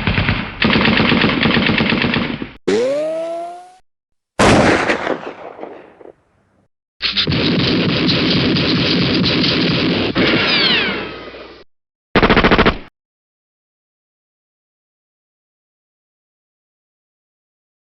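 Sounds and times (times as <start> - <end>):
rapid gunfire: 0.0 - 2.6, 7.1 - 10.4, 12.2 - 12.9.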